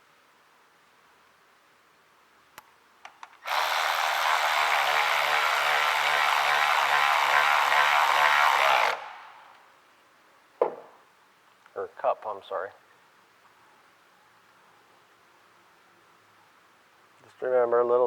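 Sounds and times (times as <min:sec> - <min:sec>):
power drill-driver running: 0:03.4 - 0:09.2.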